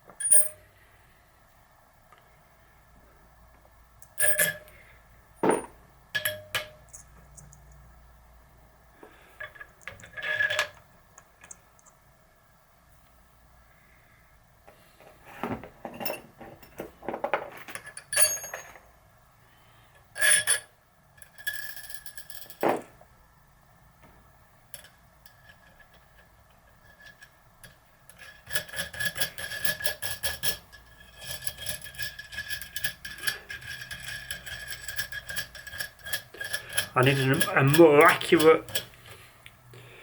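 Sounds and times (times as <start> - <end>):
steel parts clinking and knocking: 0.0 - 0.7, 4.0 - 7.8, 9.0 - 10.8, 15.6 - 18.9, 20.1 - 23.0, 24.7 - 39.2.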